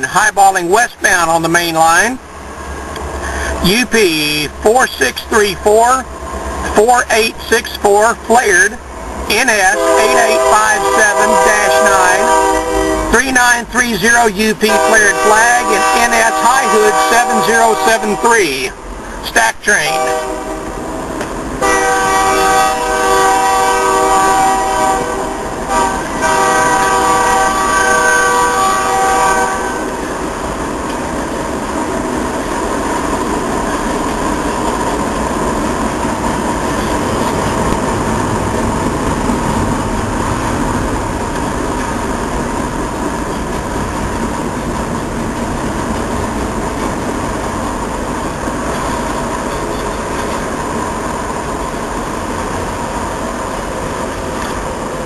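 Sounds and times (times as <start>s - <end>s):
freight train wheels rumbling: 0.0s - 55.0s
locomotive air horn blasts: 9.5s - 13.3s, 14.6s - 18.7s, 19.8s - 21.0s, 21.6s - 30.1s.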